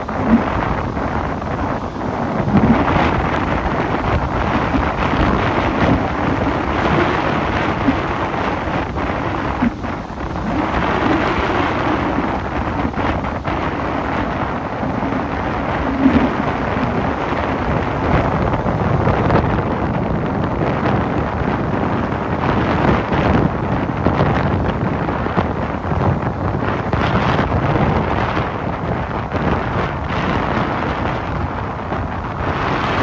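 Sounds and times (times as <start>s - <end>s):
surf breaking on beach: 0.0s - 33.0s
wind buffeting microphone: 0.0s - 33.0s.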